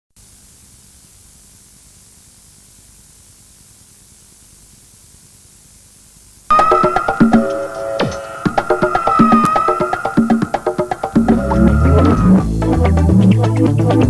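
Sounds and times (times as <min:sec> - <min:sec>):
broadcast static hiss: 0:00.2 - 0:08.8
electronic gliding tone with clicks: 0:06.5 - 0:12.4.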